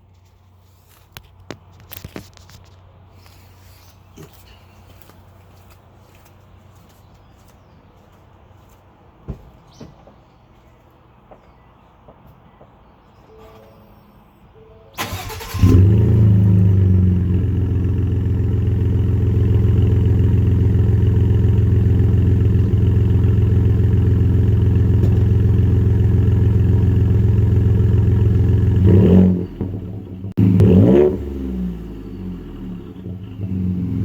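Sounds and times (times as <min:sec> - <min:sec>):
starter motor cranking: 0:15.0 - 0:15.9
engine revving: 0:15.0 - 0:20.1, 0:27.3 - 0:34.0
truck engine idling: 0:15.0 - 0:28.8.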